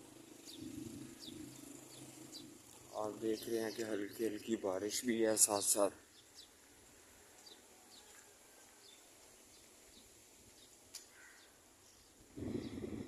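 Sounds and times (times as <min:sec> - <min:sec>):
small bird chirping: 0:00.3 - 0:04.1.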